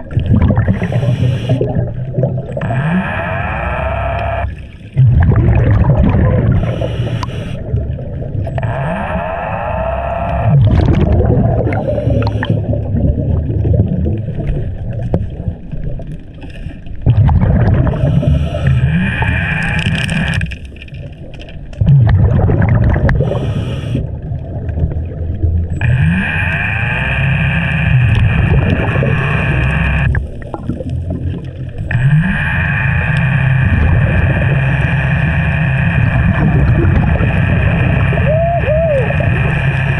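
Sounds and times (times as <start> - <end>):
exhaled bubbles gurgling underwater: 0.0 - 39.9
regulator hissing on inhale: 0.7 - 1.7, 6.5 - 7.6, 11.7 - 12.7, 17.9 - 20.4, 23.2 - 24.1.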